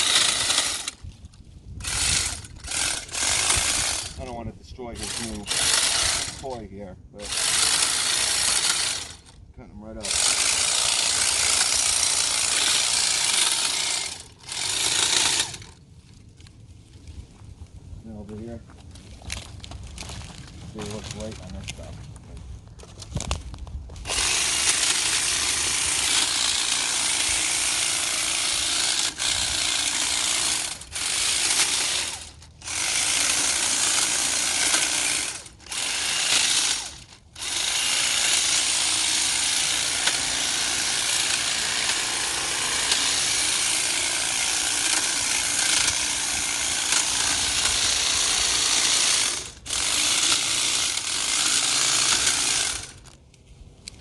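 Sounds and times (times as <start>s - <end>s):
hedge trimmer cutting branches: 0.0s - 1.1s, 1.8s - 15.8s, 24.0s - 53.2s.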